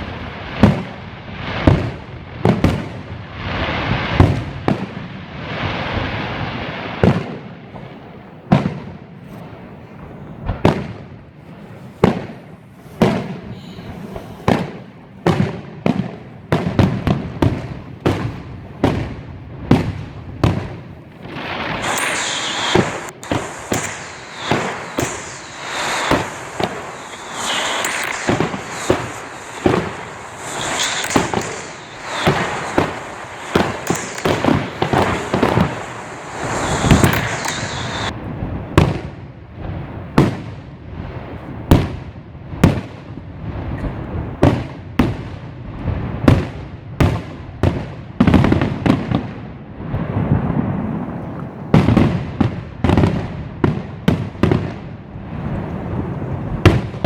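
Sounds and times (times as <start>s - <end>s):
firework bangs: 0.0s - 57.0s
firework crackle: 0.0s - 57.0s.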